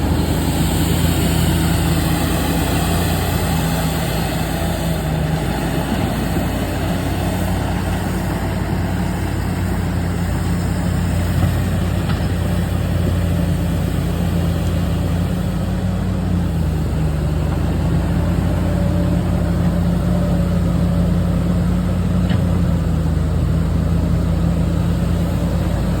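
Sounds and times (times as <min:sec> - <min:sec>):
bulldozer diesel engine running: 0:00.0 - 0:26.0.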